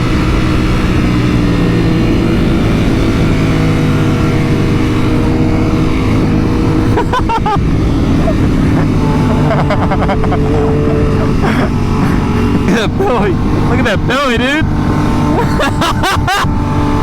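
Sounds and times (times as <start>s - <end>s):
motorcycle engine running: 0.0s - 17.0s.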